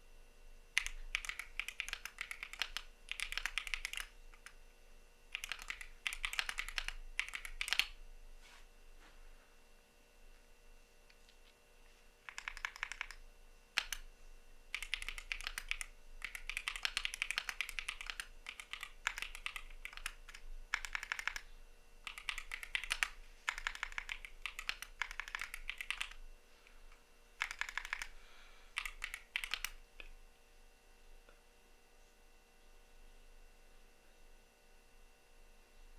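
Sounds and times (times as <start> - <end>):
mechanical keyboard typing: 0.8 - 4.6, 5.3 - 8.0, 12.2 - 14.1, 14.7 - 26.2, 27.4 - 28.2, 28.8 - 30.1.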